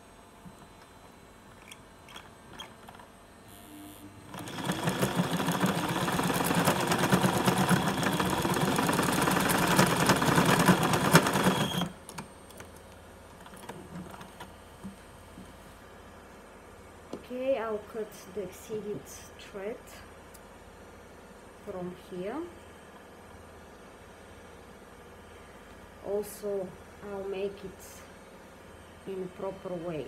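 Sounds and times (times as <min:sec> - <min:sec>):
sewing machine stitching: 0:04.3 - 0:12.0.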